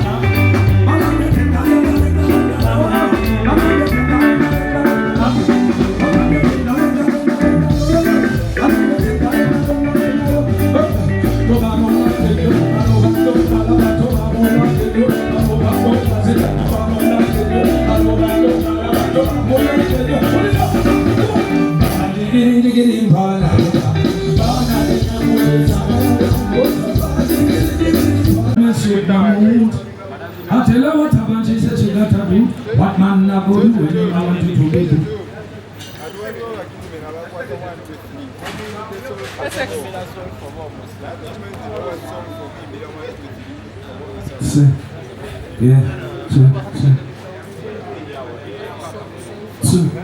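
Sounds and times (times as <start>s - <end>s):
amplified music with singing: 0.0s - 28.6s.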